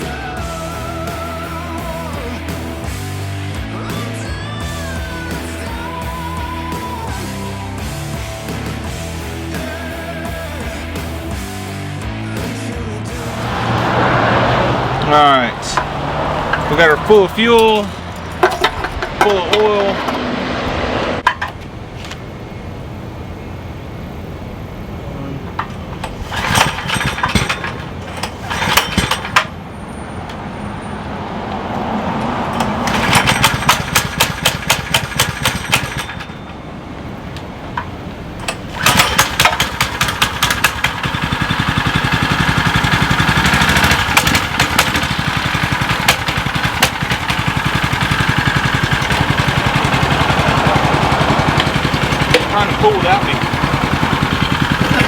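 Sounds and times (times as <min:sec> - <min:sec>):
mini bike engine running: 0:25.0 - 0:30.4, 0:32.3 - 0:55.0.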